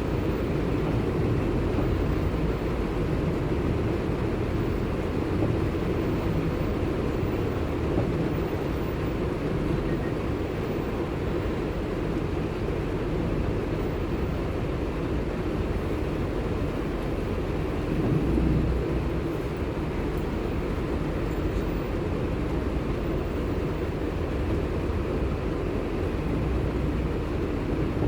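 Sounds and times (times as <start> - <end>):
car engine and road noise: 0.0 - 28.0.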